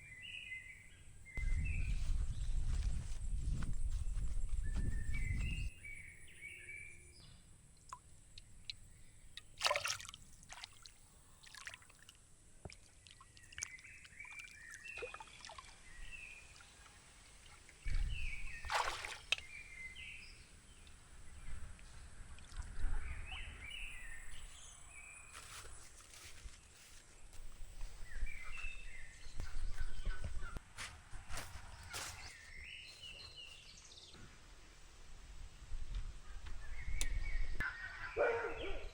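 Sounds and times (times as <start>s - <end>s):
small birds chirping: 0.0s - 9.6s, 12.7s - 30.6s.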